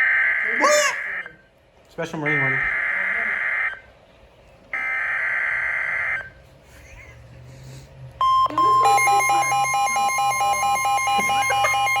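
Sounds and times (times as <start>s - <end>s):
steady warning alarm tone: 2.2s - 3.9s, 4.8s - 6.4s, 8.2s - 12.0s
rapid pulsing alert beeping: 8.2s - 12.0s.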